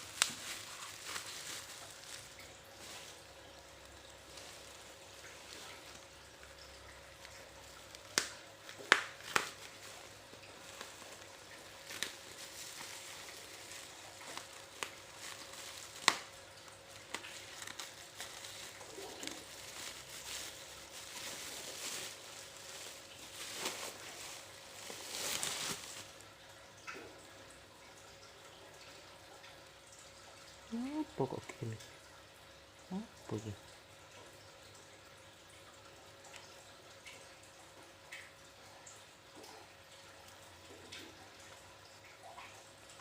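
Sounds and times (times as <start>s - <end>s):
packaging crinkling and rustling: 0.0s - 6.2s, 7.1s - 26.3s.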